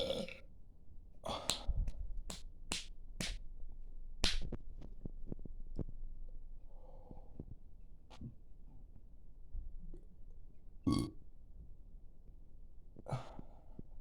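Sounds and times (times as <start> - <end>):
loud burp: 0.0 - 0.4, 10.8 - 11.2.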